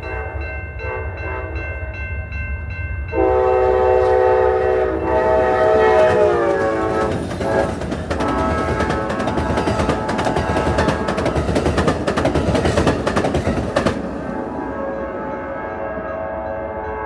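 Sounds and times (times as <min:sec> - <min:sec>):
locomotive horn blast: 0:03.1 - 0:11.4, 0:14.4 - 0:17.0
train wheels clattering on rails: 0:05.0 - 0:14.6.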